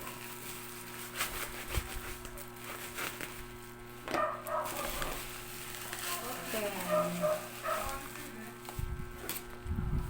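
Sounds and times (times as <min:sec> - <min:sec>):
knife cutting packaging: 0:00.0 - 0:08.5
plastic packaging rustling: 0:00.0 - 0:10.0
dog barking: 0:04.1 - 0:05.2, 0:06.8 - 0:08.1.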